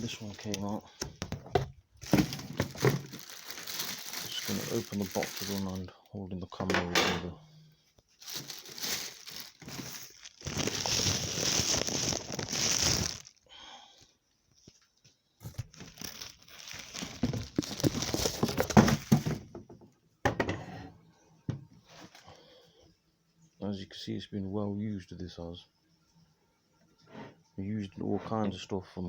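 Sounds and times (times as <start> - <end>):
cardboard packaging rustling: 0.0 - 5.8, 8.2 - 13.4, 15.4 - 19.5.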